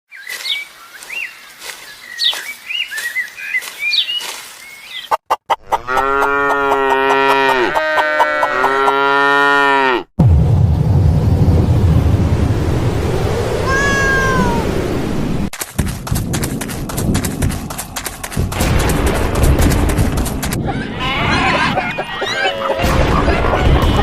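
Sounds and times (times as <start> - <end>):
cow mooing: 5.6 - 10.1.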